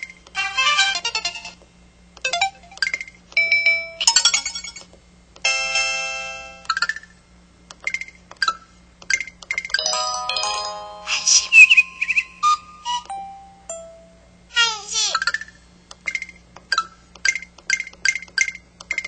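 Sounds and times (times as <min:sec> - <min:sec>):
phone electronic beeps and chimes: 0:09.8 - 0:14.2
ringing electronic chords: 0:09.8 - 0:14.3.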